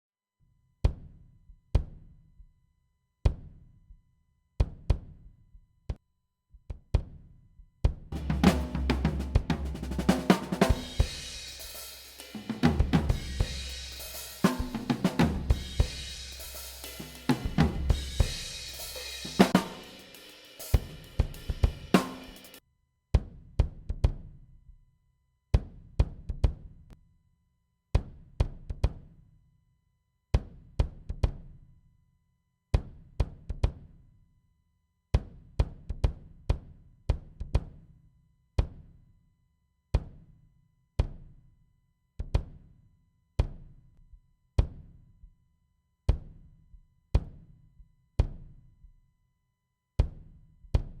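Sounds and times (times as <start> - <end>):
drum kit groove: 7.9 - 22.6.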